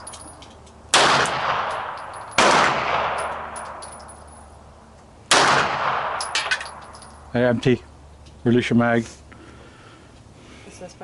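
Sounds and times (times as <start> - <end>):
gunshot with ringing decay: 0.9 - 3.5, 5.3 - 6.5.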